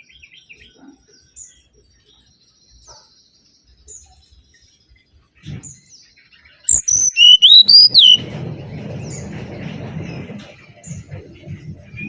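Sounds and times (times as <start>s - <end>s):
loud sharp bird call: 6.7s - 8.2s
birds chirping and whistling: 6.7s - 8.3s.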